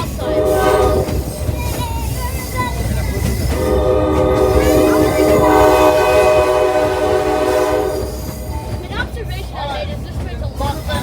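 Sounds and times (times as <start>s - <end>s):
locomotive horn chord: 0.0s - 1.5s, 3.5s - 8.5s
train rumbling on rails: 0.0s - 11.0s.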